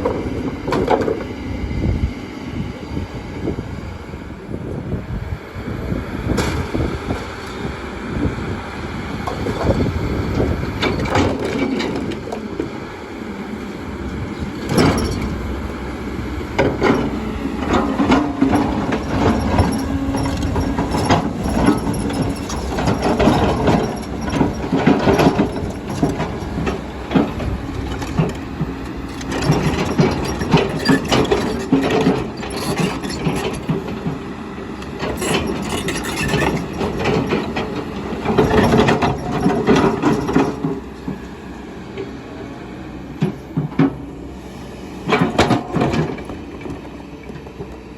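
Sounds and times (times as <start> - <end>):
excavator diesel engine: 0.0 - 47.9.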